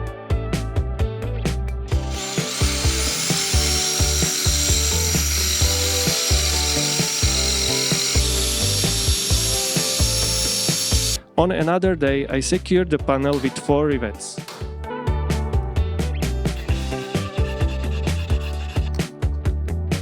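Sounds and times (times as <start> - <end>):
background music with steady beat: 0.0 - 20.0
power tool whining: 1.9 - 11.2, 16.6 - 18.9.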